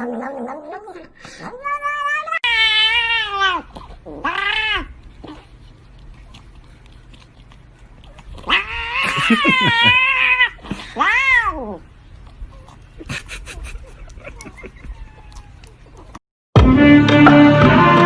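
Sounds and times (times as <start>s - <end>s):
cat yowling: 1.5s - 4.9s, 8.4s - 11.8s, 14.9s - 15.7s.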